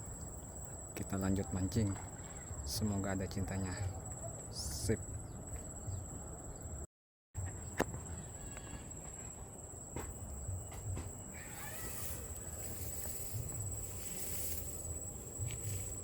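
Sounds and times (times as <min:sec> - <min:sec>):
high-pitched whine: 0:10.5 - 0:16.0
light hiss: 0:11.4 - 0:16.0.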